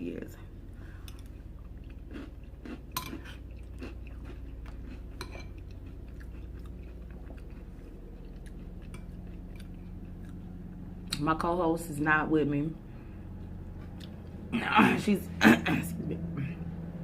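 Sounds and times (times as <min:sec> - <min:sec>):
steady low hum: 0:00.0 - 0:17.0
person chewing soup: 0:01.0 - 0:11.1, 0:13.1 - 0:14.5.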